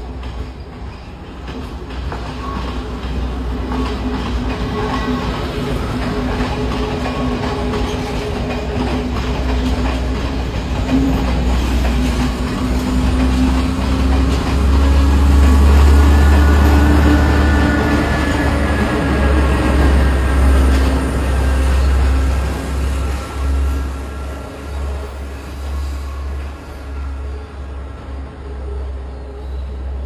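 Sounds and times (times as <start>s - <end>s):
train wheels clattering on rails: 0.0s - 27.4s.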